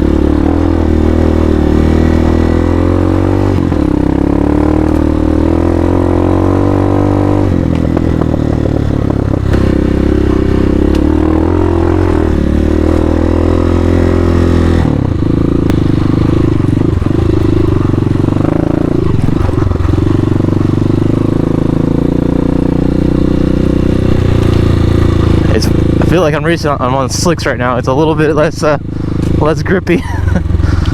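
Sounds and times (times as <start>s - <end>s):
motorcycle engine running hard: 0.0s - 30.9s.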